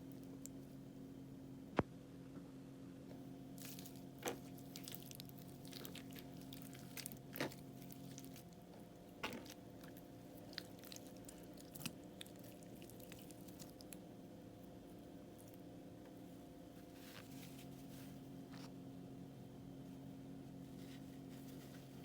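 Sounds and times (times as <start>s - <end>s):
slime crackling and crunching: 3.6s - 8.6s, 9.2s - 14.0s.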